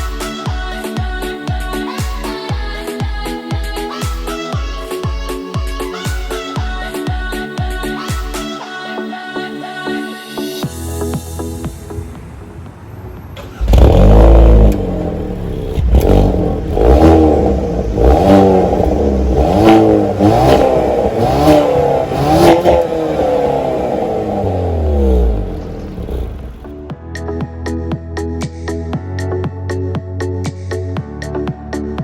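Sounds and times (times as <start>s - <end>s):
exhaust cracks: 13.3s - 26.7s
car engine revving: 13.4s - 26.7s.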